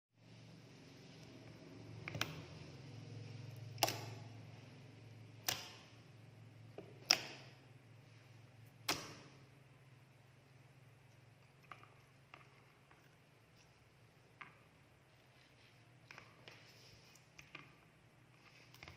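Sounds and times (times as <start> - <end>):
steady low hum: 0.2 - 18.9.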